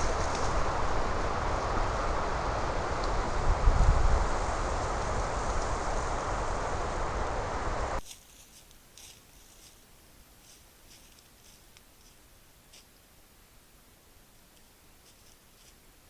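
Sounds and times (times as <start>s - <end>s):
wind buffeting microphone: 0.0s - 8.0s.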